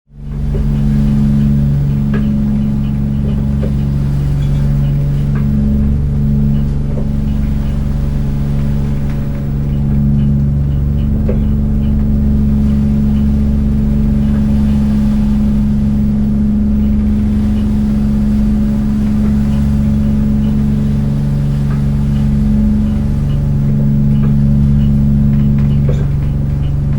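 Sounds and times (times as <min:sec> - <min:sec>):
boat engine idling: 0:00.1 - 0:26.9.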